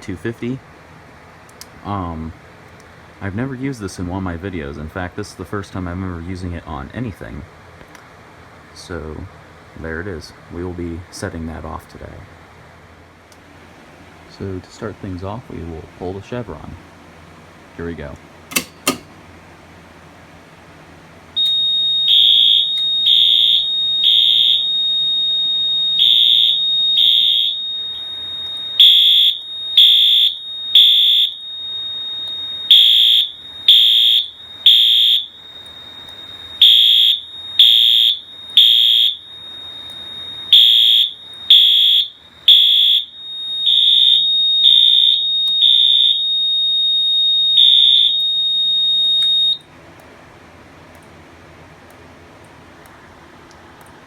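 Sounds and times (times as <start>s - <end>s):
fire alarm horn blasts: 18.5s - 19.0s, 21.4s - 49.7s.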